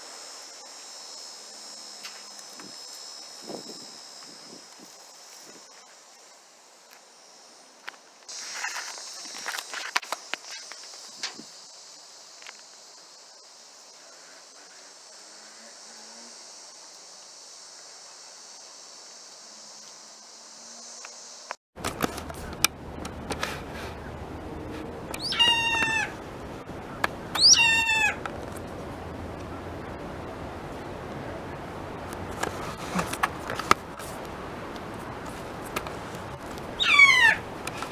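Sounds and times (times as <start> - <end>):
steady high hiss: 0.0 - 37.9
animal meowing: 25.1 - 28.3, 36.2 - 37.9.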